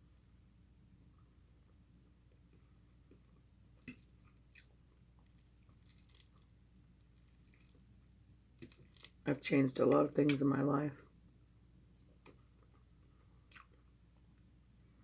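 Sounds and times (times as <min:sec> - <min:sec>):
chewing with wet mouth clicks: 0:03.8 - 0:06.4, 0:08.6 - 0:09.2, 0:13.5 - 0:13.9.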